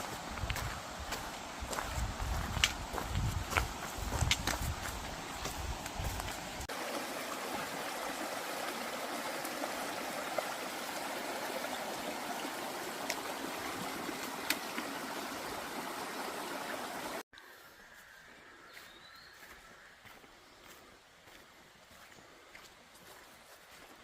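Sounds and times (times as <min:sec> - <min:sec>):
stream flowing over rocks: 0:00.0 - 0:17.3.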